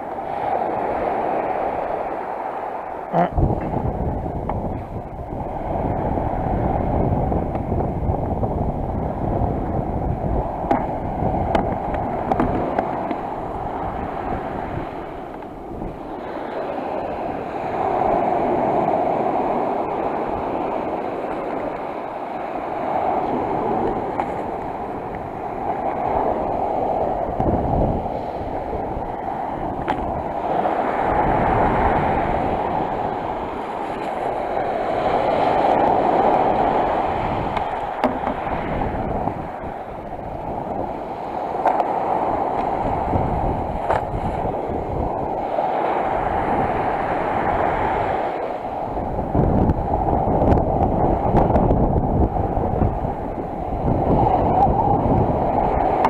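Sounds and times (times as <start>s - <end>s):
sea surf washing on shore: 0.0s - 56.0s.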